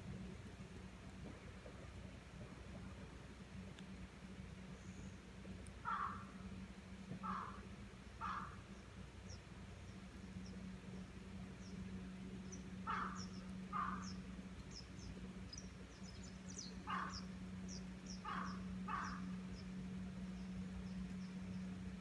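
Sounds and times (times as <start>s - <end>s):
steady low hum: 0.0s - 22.0s
crow cawing: 5.8s - 6.3s, 7.2s - 7.6s, 8.2s - 8.6s, 12.9s - 14.1s, 16.9s - 17.2s, 18.2s - 19.3s
small birds chirping: 11.6s - 21.7s.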